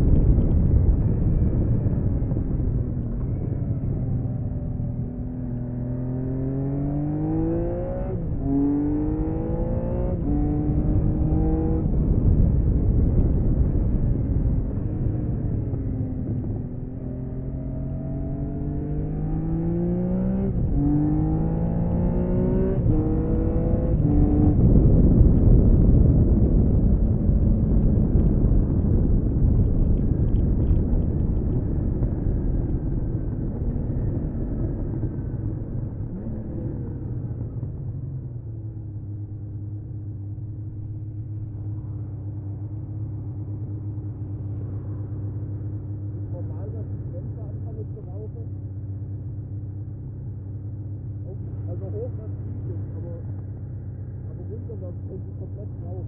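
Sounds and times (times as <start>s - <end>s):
wind rush: 0.0s - 5.1s, 7.2s - 16.9s, 22.4s - 38.1s
motorcycle engine accelerating: 0.0s - 56.0s.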